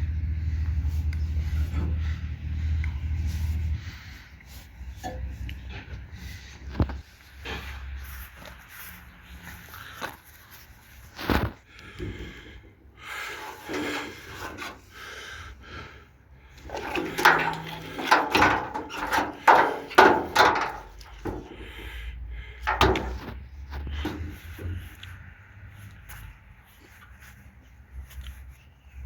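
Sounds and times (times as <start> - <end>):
hard objects knocking and clattering: 16.6 - 21.6, 22.6 - 23.4.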